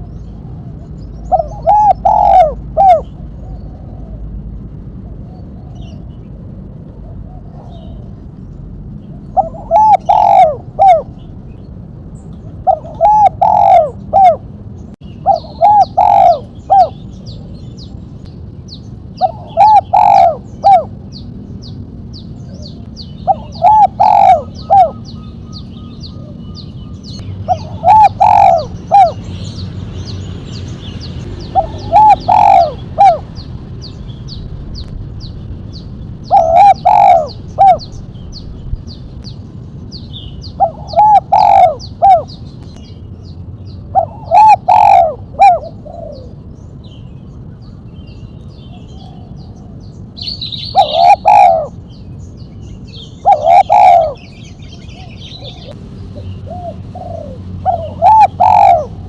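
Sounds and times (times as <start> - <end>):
dove cooing: 0.0 - 4.4, 9.2 - 11.3, 12.5 - 14.5, 15.2 - 17.2, 19.2 - 21.1, 22.5 - 29.6, 31.3 - 33.4, 36.2 - 38.1, 40.4 - 42.4, 43.9 - 46.4, 50.5 - 51.8, 52.9 - 59.0.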